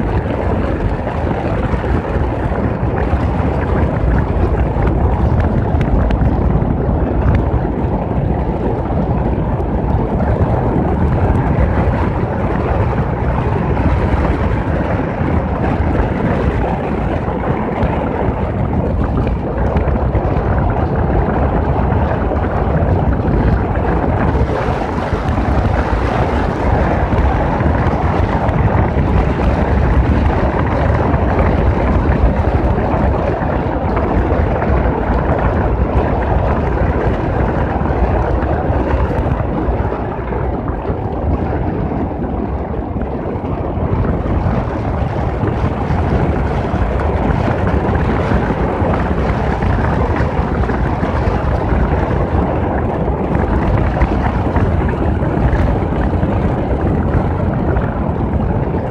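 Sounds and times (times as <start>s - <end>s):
motorcycle low rumble: 0.0s - 58.9s
wind rush on microphone: 0.0s - 58.9s.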